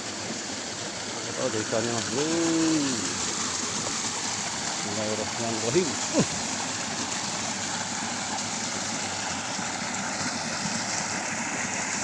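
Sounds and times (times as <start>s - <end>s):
stream water rushing: 0.0s - 12.0s.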